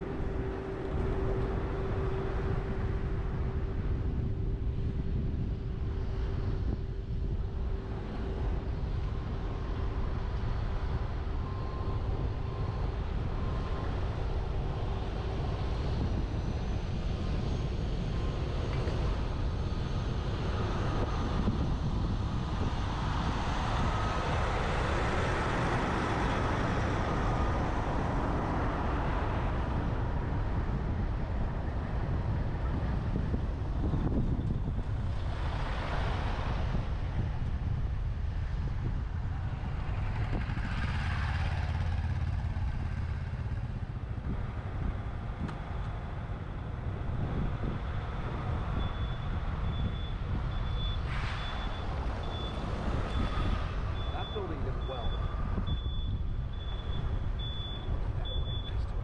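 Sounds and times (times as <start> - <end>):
truck road noise: 0.0 - 59.0
wind rush: 0.0 - 59.0
faint steady tones: 39.5 - 59.0.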